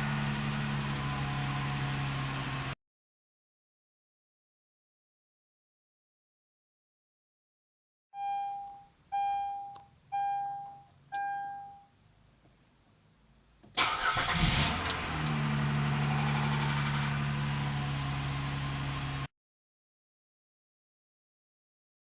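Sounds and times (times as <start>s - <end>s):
car engine fast idle: 0.0s - 2.8s, 13.7s - 19.3s
dashboard chimes: 8.2s - 11.9s
car engine starting with rattle: 13.6s - 19.3s.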